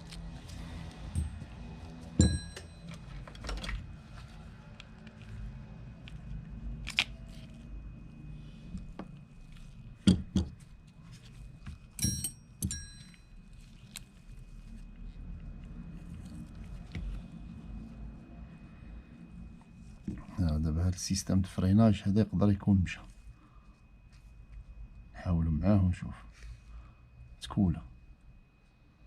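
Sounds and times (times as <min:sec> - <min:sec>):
metal parts clinking: 0:12.0 - 0:13.2.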